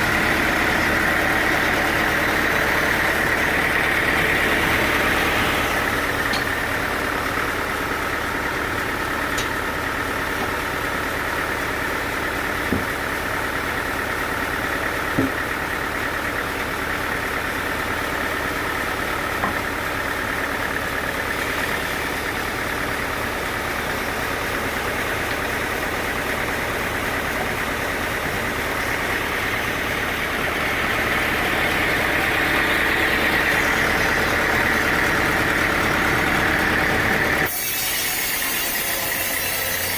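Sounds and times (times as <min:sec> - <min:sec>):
sawmill machinery whining: 0:00.0 - 0:39.9.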